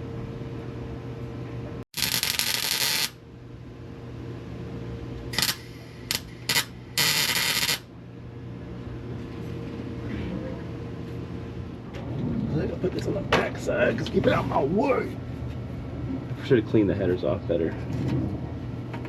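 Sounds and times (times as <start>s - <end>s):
steady low hum: 0.0s - 19.0s
welder arcing in bursts: 2.0s - 3.2s, 5.3s - 7.9s.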